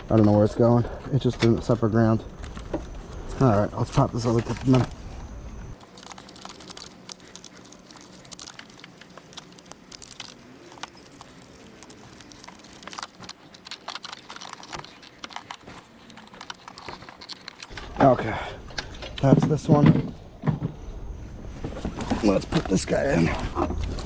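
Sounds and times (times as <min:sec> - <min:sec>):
plastic rattles: 0:05.8 - 0:17.8.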